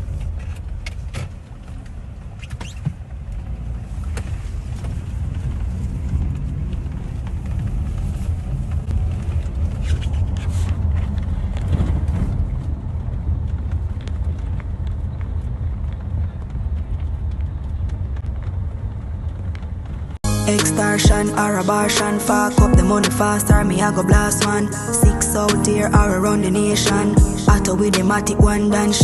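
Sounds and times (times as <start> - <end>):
motor vehicle rumble: 0.0 - 29.0.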